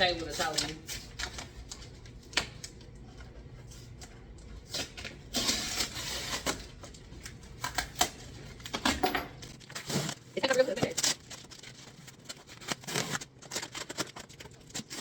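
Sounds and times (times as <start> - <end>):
cardboard tearing: 4.6 - 6.9, 9.6 - 15.0.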